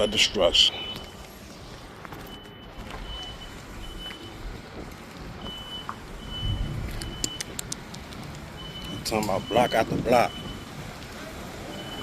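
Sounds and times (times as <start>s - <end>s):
reversing alarm beeps: 0.0s - 1.2s, 2.2s - 4.4s, 5.4s - 7.5s, 8.6s - 10.7s, 11.7s - 12.0s
low rumble: 5.4s - 8.7s.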